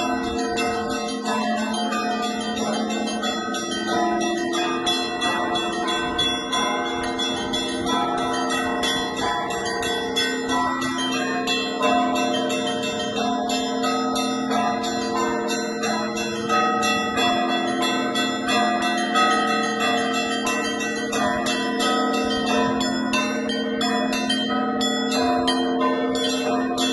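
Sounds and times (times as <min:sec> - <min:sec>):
large church bells ringing: 0:00.0 - 0:26.9
small church bells ringing quickly: 0:00.0 - 0:26.9.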